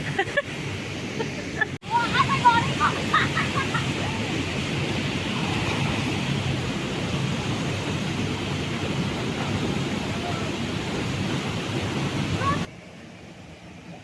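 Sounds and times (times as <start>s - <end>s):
river water rushing over stones: 1.9s - 12.7s.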